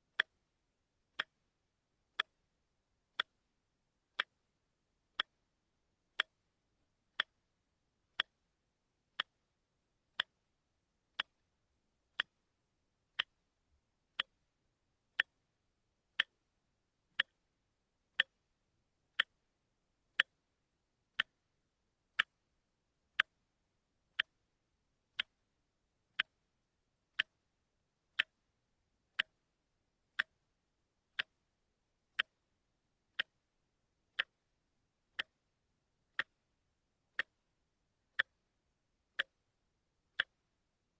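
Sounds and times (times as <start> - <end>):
clock ticking: 0.0 - 0.5, 1.1 - 1.5, 2.1 - 2.5, 3.1 - 8.5, 9.1 - 9.5, 10.1 - 10.5, 11.1 - 11.5, 12.1 - 12.5, 13.1 - 13.5, 14.1 - 14.5, 15.1 - 15.5, 16.1 - 17.5, 18.1 - 18.5, 19.1 - 19.5, 20.1 - 21.5, 22.1 - 23.5, 24.1 - 24.5, 25.1 - 25.5, 26.1 - 26.5, 27.1 - 27.5, 28.1 - 28.5, 29.1 - 40.8.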